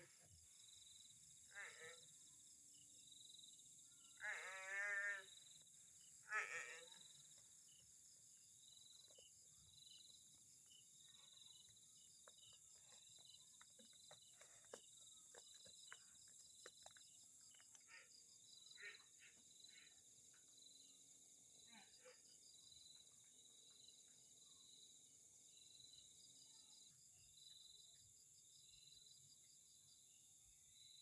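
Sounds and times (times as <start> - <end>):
faint quavering bleating: 1.5 - 2.1, 4.2 - 5.4, 6.2 - 7.0.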